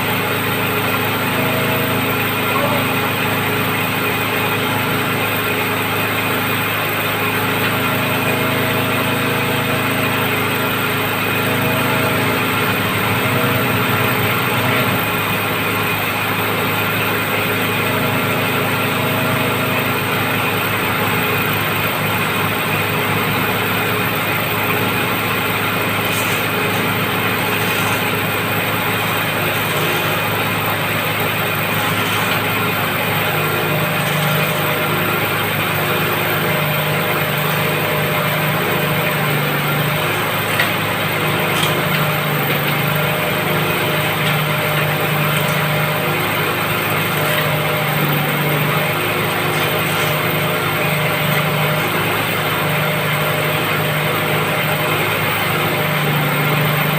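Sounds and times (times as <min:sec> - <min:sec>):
drilling rig engine running: 0:00.0 - 0:56.9.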